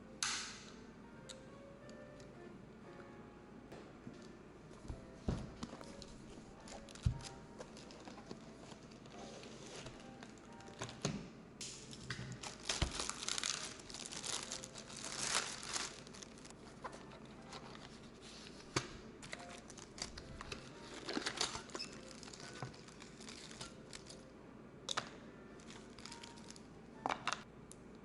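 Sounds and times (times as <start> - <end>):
packaging crinkling and rustling: 5.6 - 11.0, 12.3 - 24.2, 25.6 - 26.7.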